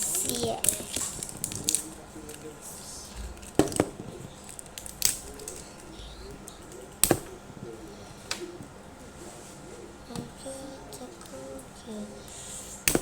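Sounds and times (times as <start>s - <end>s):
wrapping rustling: 0.0s - 7.0s
wrapping crackling snaps: 0.0s - 8.6s.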